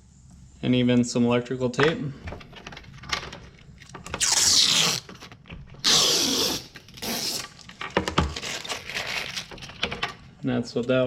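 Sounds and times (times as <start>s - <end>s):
packaging rustling: 6.8s - 10.2s.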